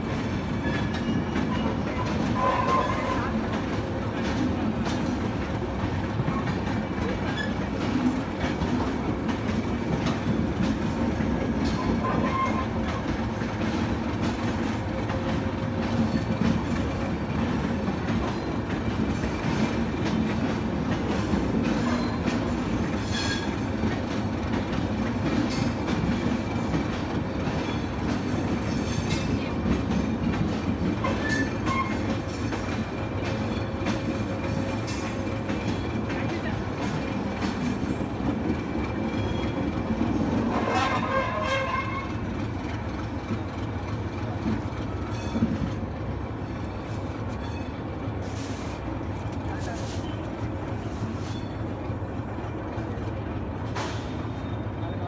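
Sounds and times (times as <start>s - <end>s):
clickety-clack over rail joints: 0.0s - 55.0s
train wheels rumbling: 0.0s - 55.0s
high wheel squeaks: 0.4s - 3.4s, 11.6s - 12.9s, 31.0s - 32.2s, 44.9s - 45.7s, 46.8s - 48.5s.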